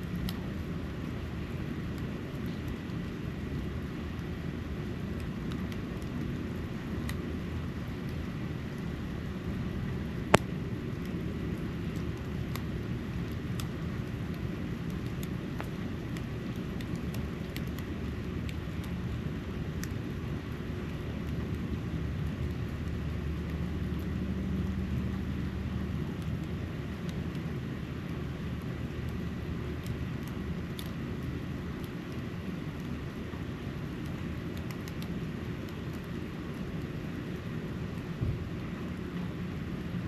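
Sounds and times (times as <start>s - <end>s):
steady low rumble: 0.0s - 40.0s
faint scattered ticks: 10.2s - 38.5s.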